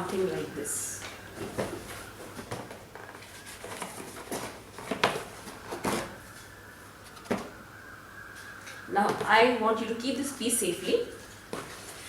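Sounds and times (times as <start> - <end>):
cardboard rustling: 1.3 - 7.5.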